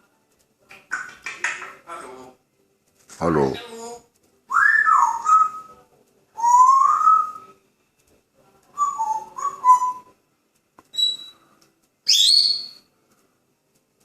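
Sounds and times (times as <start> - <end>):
parrot whistling: 4.5 - 5.7, 6.4 - 7.6, 8.8 - 10.1, 10.9 - 11.4, 12.0 - 12.9.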